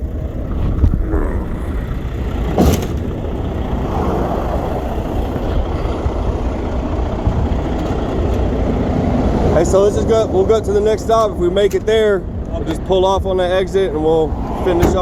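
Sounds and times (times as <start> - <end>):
diesel truck engine idling: 0.0 - 15.0
truck hood shutting clunk: 2.2 - 3.9, 14.8 - 15.0.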